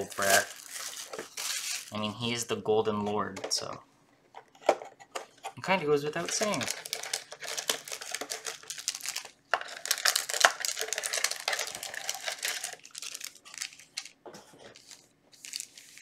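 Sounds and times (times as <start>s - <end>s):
plastic packaging crinkling and tearing: 0.0s - 2.4s, 6.0s - 16.0s.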